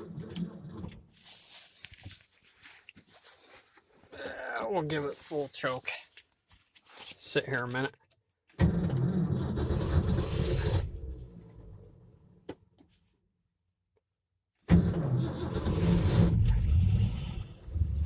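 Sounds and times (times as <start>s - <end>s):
truck engine starting: 0.0s - 1.2s, 8.6s - 12.4s, 14.7s - 18.0s.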